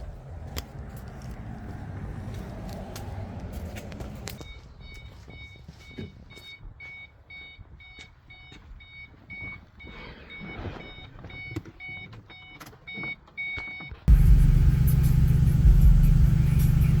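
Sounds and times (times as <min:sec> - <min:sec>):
car warning chime beeping: 0:04.4 - 0:17.0
car engine starting and rumbling: 0:14.1 - 0:17.0.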